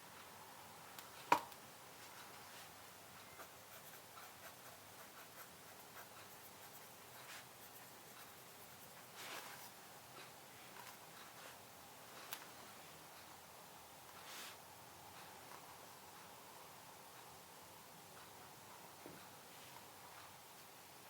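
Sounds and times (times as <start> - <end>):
soft scratching: 2.0 - 10.3.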